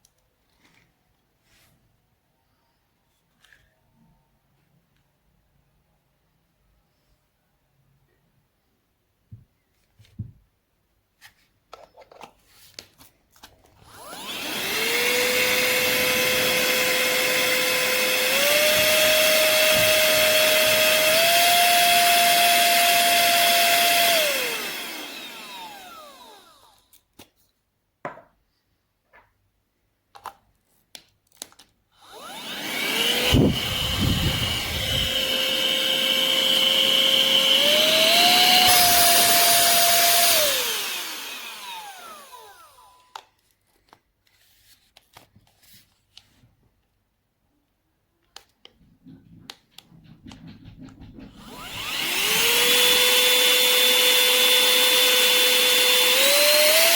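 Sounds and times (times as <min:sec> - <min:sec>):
handheld vacuum motor whine: 0:13.8 - 0:27.0, 0:32.0 - 0:43.2, 0:50.8 - 0:56.9.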